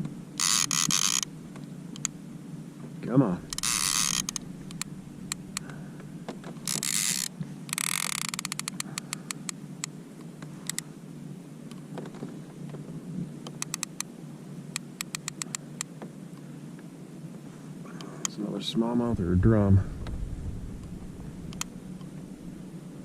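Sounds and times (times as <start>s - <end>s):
fishing reel clicking: 0.4s - 1.3s, 3.5s - 4.9s, 6.6s - 9.1s
reel buzzing bursts: 0.4s - 1.3s, 3.5s - 5.7s, 6.6s - 8.7s.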